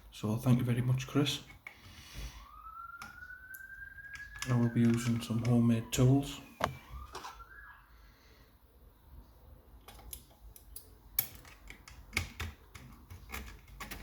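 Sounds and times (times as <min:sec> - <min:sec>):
lock-picking tools clicking in lock: 0:09.8 - 0:14.0.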